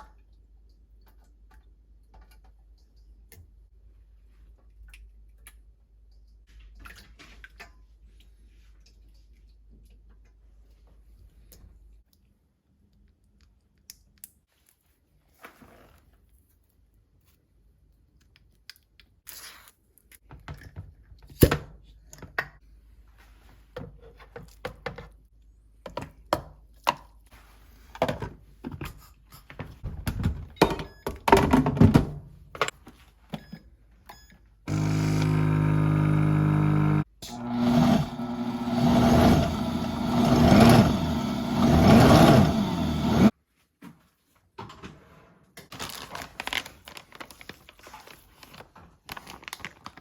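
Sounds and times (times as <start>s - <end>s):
electric blender running: 34.7s - 43.3s.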